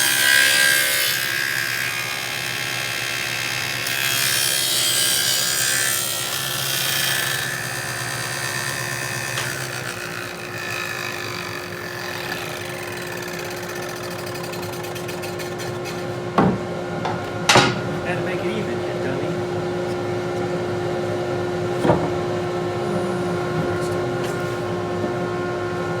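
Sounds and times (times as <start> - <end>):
table saw cutting wood: 0.0 - 25.5
saw blade winding down: 3.8 - 16.1.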